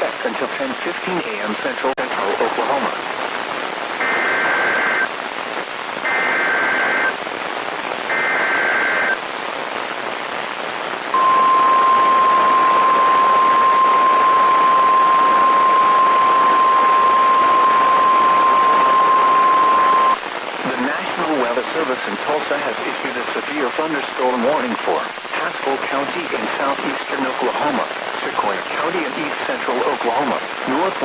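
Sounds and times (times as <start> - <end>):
radio static hiss: 0.0 - 31.0
data tone bursts: 11.2 - 20.2
steady warning alarm tone: 11.2 - 20.2.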